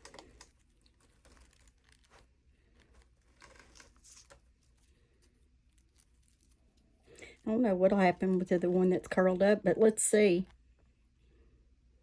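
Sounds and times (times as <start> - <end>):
scrapes and crinkles: 0.0 - 9.5
faint rustling and handling: 0.0 - 12.0.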